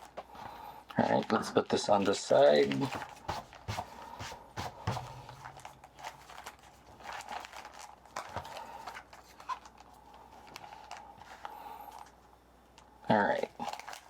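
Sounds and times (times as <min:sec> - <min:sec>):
packaging rustling and crinkling: 0:02.0 - 0:12.2, 0:13.4 - 0:14.0.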